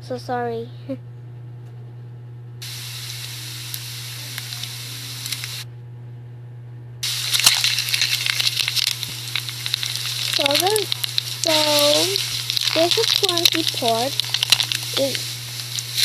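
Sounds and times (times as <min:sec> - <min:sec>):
steady low hum: 0:00.0 - 0:16.0
food sizzling in a pan: 0:02.6 - 0:05.6, 0:07.0 - 0:16.0.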